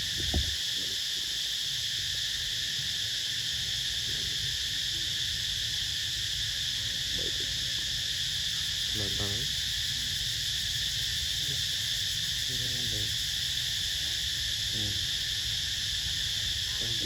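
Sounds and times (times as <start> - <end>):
insects droning: 0.0 - 17.0
low thump: 0.1 - 0.6.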